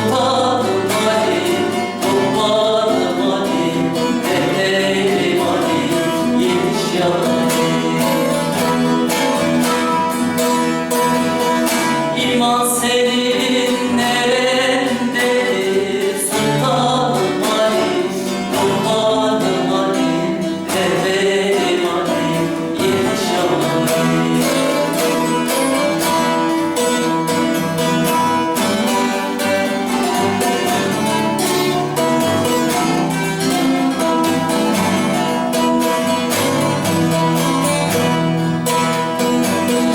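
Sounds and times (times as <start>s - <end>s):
person singing: 0.0s - 9.7s, 10.9s - 39.9s
plucked lute and acoustic guitar: 0.0s - 39.9s.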